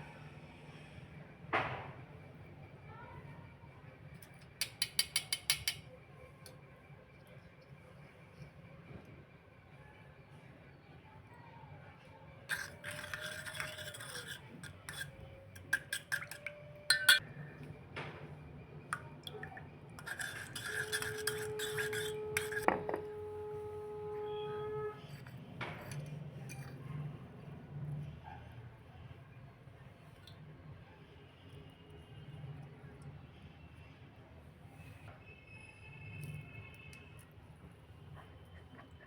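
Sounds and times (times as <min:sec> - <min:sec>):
spoon clinking on metal bowls: 0:04.2 - 0:05.9, 0:12.5 - 0:17.7, 0:18.9 - 0:23.1, 0:25.7 - 0:26.8
scraping and stirring: 0:12.5 - 0:17.7, 0:18.9 - 0:26.9.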